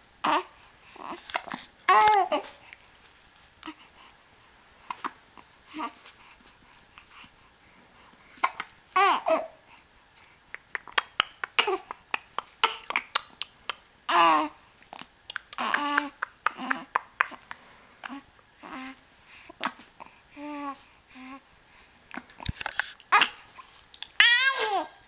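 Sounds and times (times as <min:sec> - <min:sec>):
infant cooing and babbling: 0:00.2 - 0:02.7, 0:04.9 - 0:06.1, 0:08.4 - 0:09.6, 0:14.1 - 0:14.6, 0:15.5 - 0:17.4, 0:18.0 - 0:21.4, 0:23.1 - 0:25.0.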